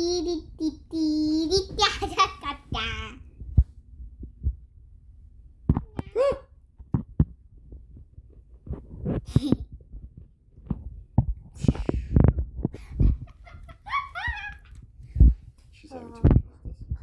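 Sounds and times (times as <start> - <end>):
child making high vocal sounds: 0.0 - 3.2, 5.9 - 6.5.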